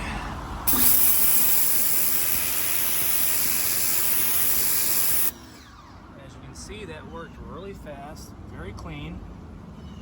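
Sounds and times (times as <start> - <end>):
pressure washer spraying concrete: 0.7 - 5.4.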